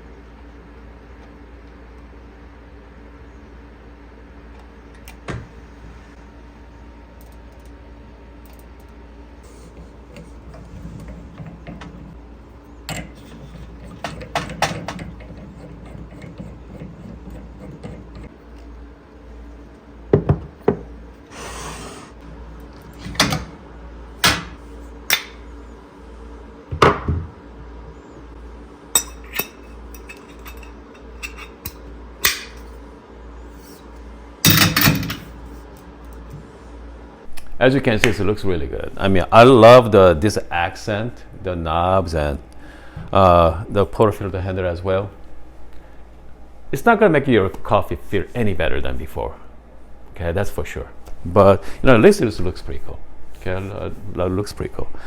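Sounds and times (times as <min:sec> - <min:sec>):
faint steady hum: 0:00.0 - 0:55.0
clicks and knocks of hard parts: 0:12.9 - 0:18.4, 0:24.2 - 0:25.4.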